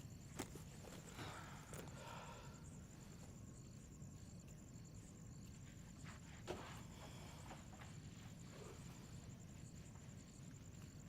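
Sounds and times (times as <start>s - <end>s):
crickets chirping: 0.0s - 11.0s
soft shuffling movement: 5.5s - 11.0s.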